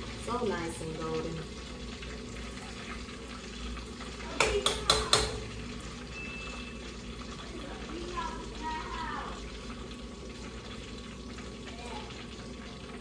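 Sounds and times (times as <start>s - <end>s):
fish frying in oil: 0.0s - 13.0s
utensil clanking on cookware: 4.0s - 5.8s.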